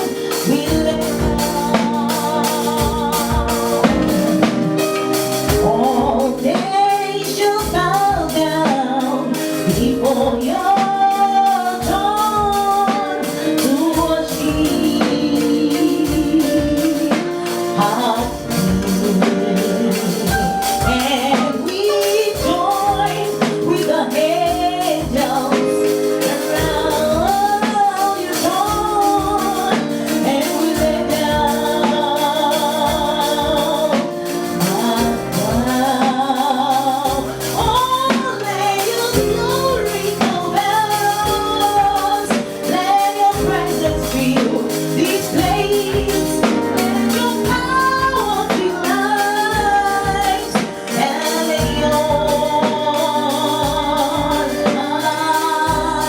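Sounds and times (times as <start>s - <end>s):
drums beat: 0.0s - 56.0s
gospel singing with band: 0.0s - 56.0s.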